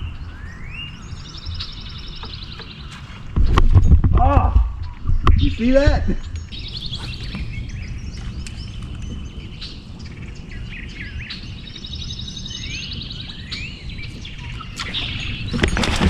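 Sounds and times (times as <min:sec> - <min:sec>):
steady low rumble: 0:00.0 - 0:16.0
wild birds trilling and whistling: 0:00.0 - 0:16.0.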